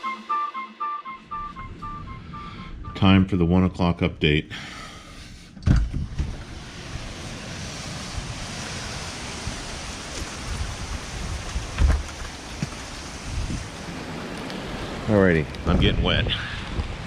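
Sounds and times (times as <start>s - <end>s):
strong wind and rain: 5.6s - 17.0s
wind buffeting microphone: 5.8s - 17.0s.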